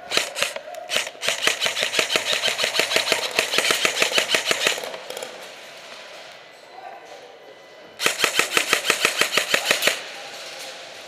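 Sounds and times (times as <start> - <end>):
airsoft rifles rapid firing: 0.0 - 5.3, 8.0 - 10.1.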